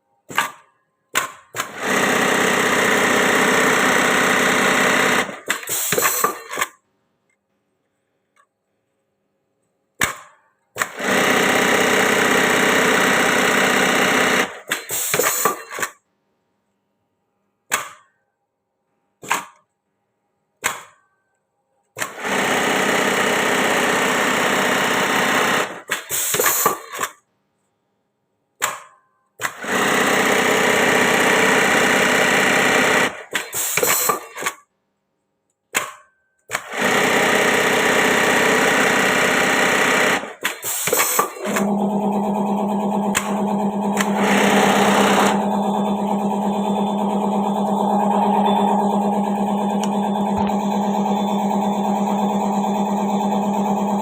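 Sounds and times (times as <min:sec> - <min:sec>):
sewing machine stitching: 0:01.2 - 0:06.8, 0:10.8 - 0:16.0, 0:22.0 - 0:27.2, 0:29.4 - 0:34.6, 0:36.5 - 0:54.0.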